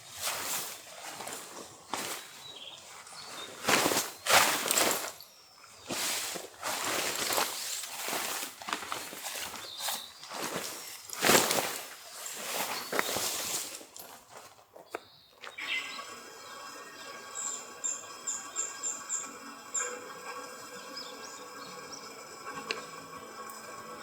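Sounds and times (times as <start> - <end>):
footsteps: 0.0 - 5.2, 5.8 - 15.7
rustling: 0.0 - 16.0.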